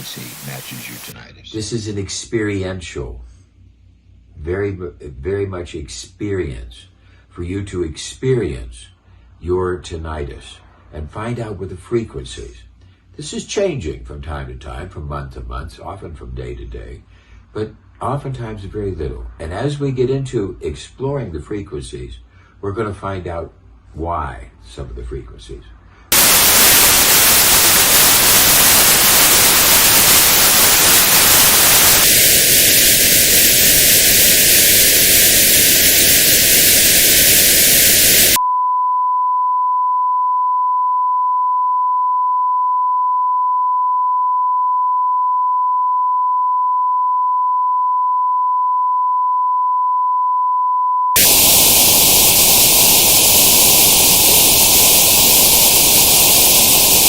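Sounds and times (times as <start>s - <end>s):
steady pure tone: 0.0s - 1.2s, 26.1s - 39.3s, 51.2s - 57.0s
white noise hiss: 0.0s - 3.0s, 26.0s - 38.4s, 51.2s - 57.0s.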